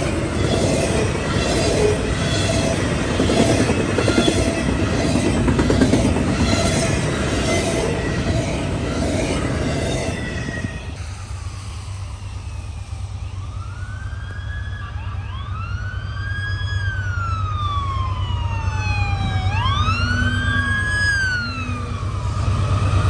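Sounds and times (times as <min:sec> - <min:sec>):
siren wailing: 0:00.0 - 0:11.0, 0:11.6 - 0:23.0
second siren wail: 0:12.3 - 0:23.0.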